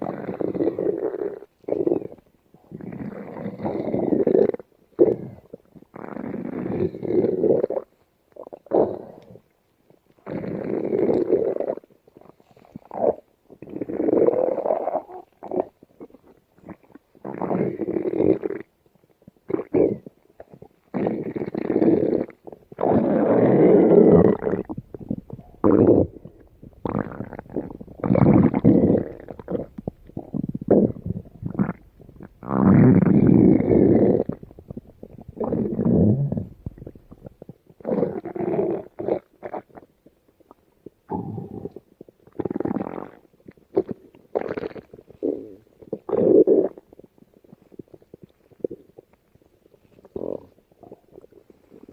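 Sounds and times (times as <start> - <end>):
stomach growling and gurgling: 0.0 - 51.9
faint ticks: 8.0 - 10.3.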